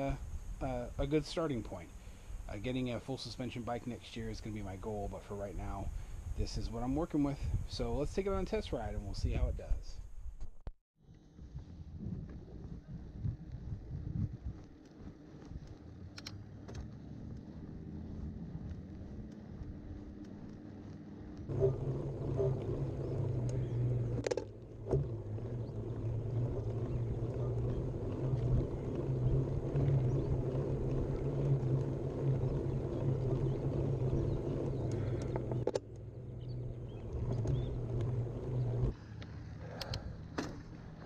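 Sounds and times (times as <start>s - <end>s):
bike tyres rumbling on trail: 0.0s - 9.3s, 11.1s - 41.0s
wind noise: 0.0s - 10.6s, 11.2s - 20.6s, 21.2s - 39.0s
low hum: 9.9s - 41.0s.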